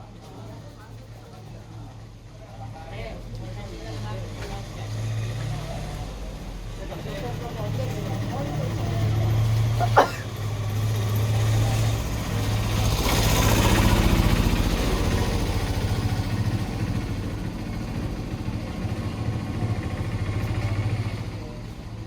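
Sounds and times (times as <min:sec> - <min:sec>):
vehicle engine humming: 0:05.4 - 0:22.0.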